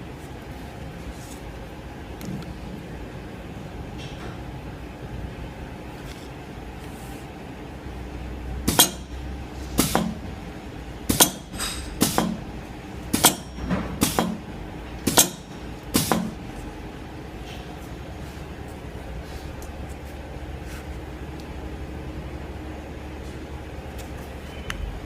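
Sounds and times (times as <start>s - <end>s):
low machine hum: 0.0s - 25.0s.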